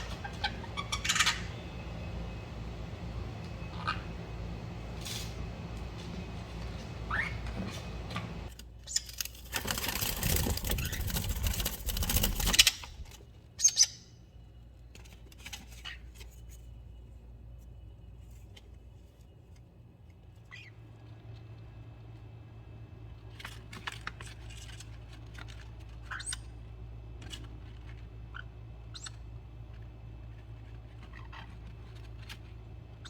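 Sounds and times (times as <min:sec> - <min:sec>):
small birds chirping: 0:00.0 - 0:05.0, 0:05.7 - 0:09.1, 0:13.5 - 0:14.5, 0:20.4 - 0:21.1, 0:26.0 - 0:26.8, 0:28.2 - 0:32.3.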